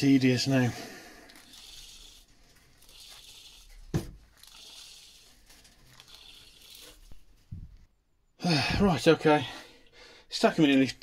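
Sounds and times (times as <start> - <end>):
wire rustling as unwound: 1.2 - 7.9.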